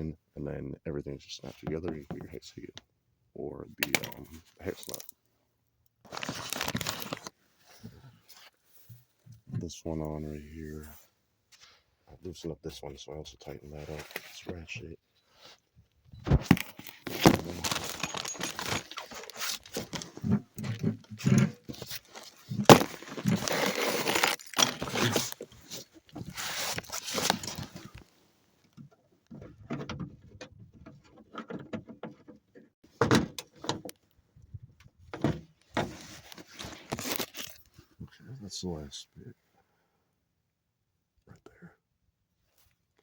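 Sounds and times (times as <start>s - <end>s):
plastic trim clattering: 16.4s - 28.0s
hand tools clicking and scraping: 16.6s - 28.0s.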